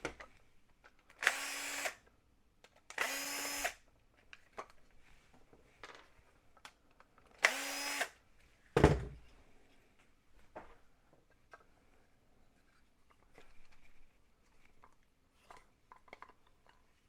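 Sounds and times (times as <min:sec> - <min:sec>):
power drill whirring: 0:01.2 - 0:02.0, 0:02.9 - 0:03.8, 0:07.4 - 0:08.2.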